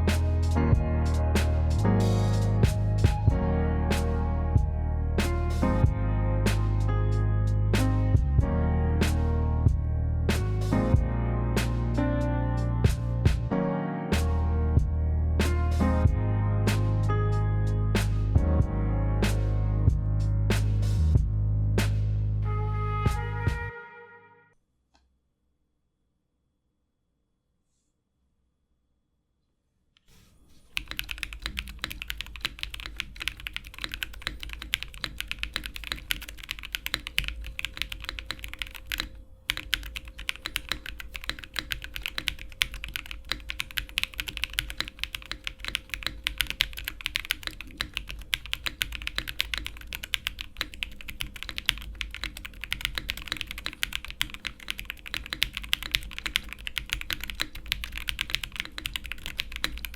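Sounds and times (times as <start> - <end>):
fast keyboard typing: 30.7 - 59.9.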